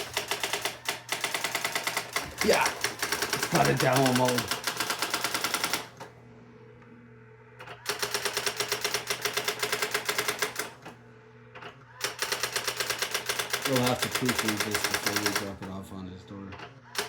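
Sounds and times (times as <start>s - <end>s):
electronic typewriter striking characters: 0.0s - 5.9s, 7.9s - 10.7s, 12.0s - 15.6s.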